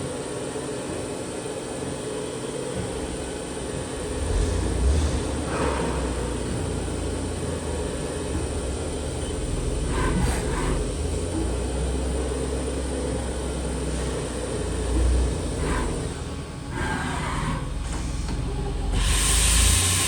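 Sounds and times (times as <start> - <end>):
machinery hum and rumble: 0.0 - 20.0.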